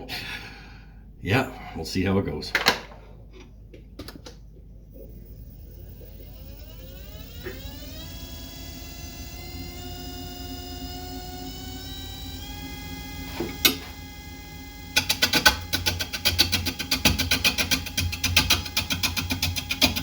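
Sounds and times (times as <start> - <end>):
wood lathe motor whining: 4.9 - 20.0
turning tool knocking on wood: 13.3 - 14.0, 14.9 - 20.0.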